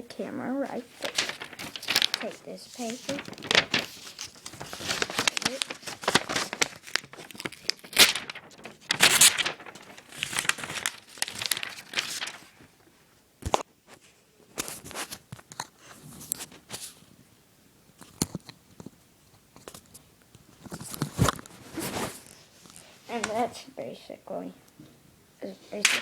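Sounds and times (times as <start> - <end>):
knife cutting crinkling paper: 0.7 - 12.5.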